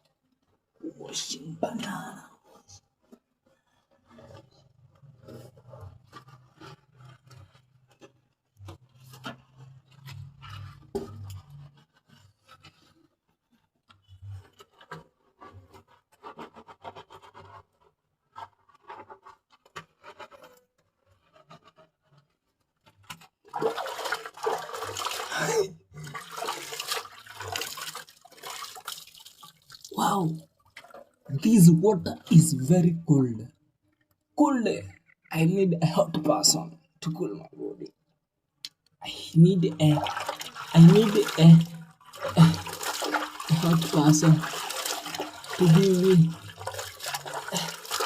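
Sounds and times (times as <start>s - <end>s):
scrubbing and rubbing: 4.0s - 30.0s, 30.6s - 31.7s, 39.4s - 48.0s
water pouring and splashing: 23.1s - 31.4s, 39.5s - 48.0s.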